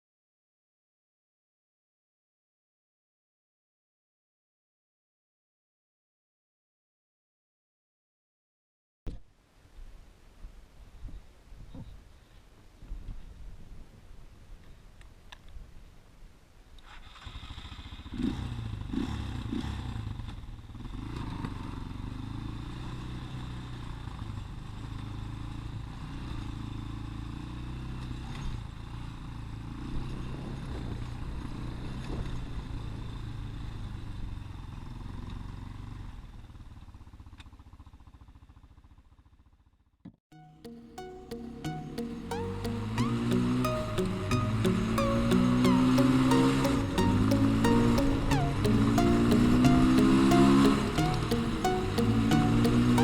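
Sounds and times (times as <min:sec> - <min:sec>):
atv engine revving: 0:17.2 - 0:23.6.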